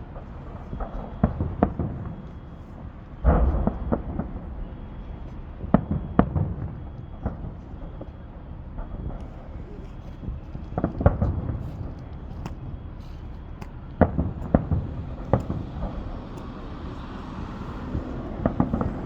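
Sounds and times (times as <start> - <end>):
fireworks booming: 3.2 - 7.6, 13.5 - 19.0
small fireworks pops: 5.2 - 19.0
fireworks sharp bangs: 13.4 - 19.0.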